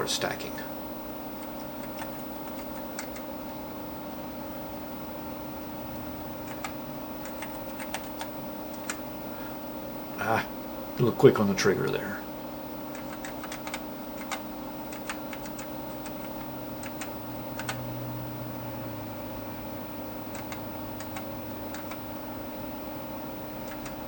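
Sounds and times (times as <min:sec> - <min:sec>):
electrical hum: 0:00.0 - 0:24.0
keyboard keys clicking: 0:01.6 - 0:03.3, 0:06.5 - 0:09.0, 0:12.9 - 0:17.8, 0:20.3 - 0:22.0, 0:23.6 - 0:24.0.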